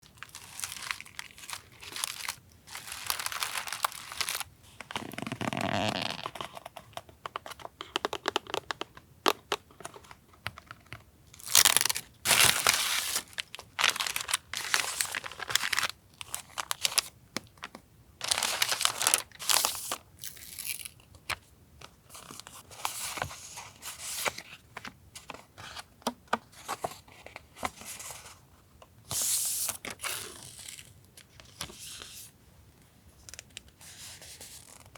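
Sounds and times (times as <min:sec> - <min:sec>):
packaging crinkling and rustling: 0:00.0 - 0:08.9, 0:09.6 - 0:21.0.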